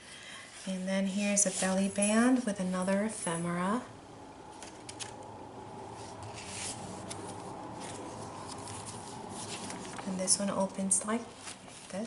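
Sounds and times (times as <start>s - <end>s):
paper rustling: 6.2s - 12.0s.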